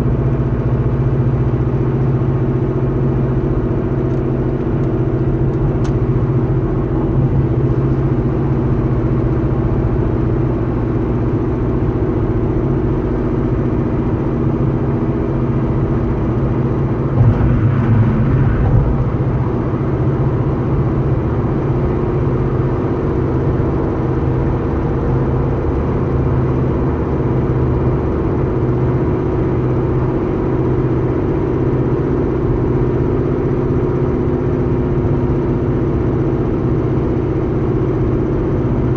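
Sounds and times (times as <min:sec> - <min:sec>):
car engine humming: 0:15.5 - 0:23.5.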